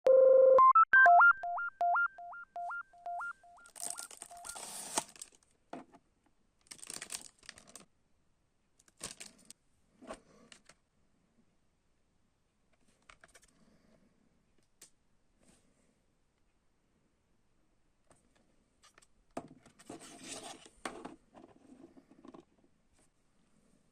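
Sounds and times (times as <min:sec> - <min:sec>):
packaging rustling and crinkling: 0:03.6 - 0:05.4, 0:06.6 - 0:07.9, 0:08.9 - 0:09.5.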